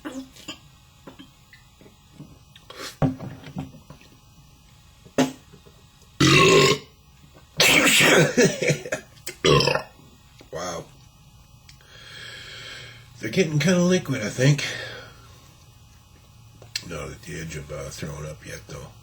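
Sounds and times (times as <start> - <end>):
man burping: 6.2 - 6.9, 7.6 - 10.0.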